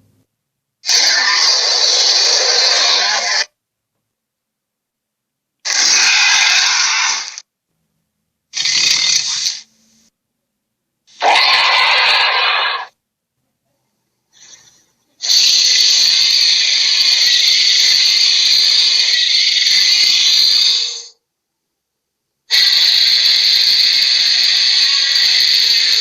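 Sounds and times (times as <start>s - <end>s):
monster hissing snarls: 0.8s - 3.5s, 5.7s - 7.4s, 8.6s - 9.6s, 11.2s - 12.9s, 15.2s - 21.1s, 22.5s - 26.0s.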